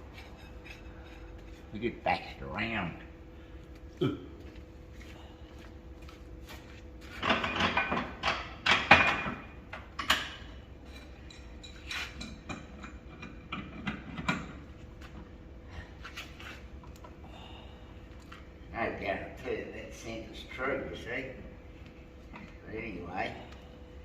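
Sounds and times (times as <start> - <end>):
steel parts clunking and scraping: 0.0 - 1.7, 7.1 - 14.7
faint steady hum: 0.0 - 24.0.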